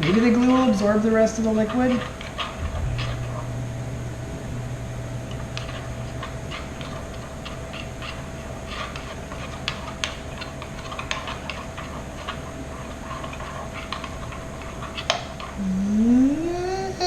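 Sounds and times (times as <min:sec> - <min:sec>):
spoon stirring slime: 0:00.0 - 0:03.6, 0:05.2 - 0:15.7
steady hum: 0:00.0 - 0:17.0
person's drawn-out vocal sound: 0:15.6 - 0:17.0.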